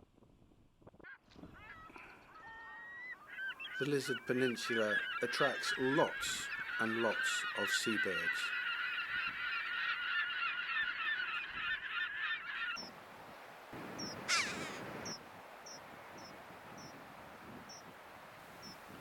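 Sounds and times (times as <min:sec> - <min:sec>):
seabirds calling in chorus: 0:01.6 - 0:12.9, 0:14.0 - 0:16.9
bird call sliding downward: 0:14.3 - 0:14.8.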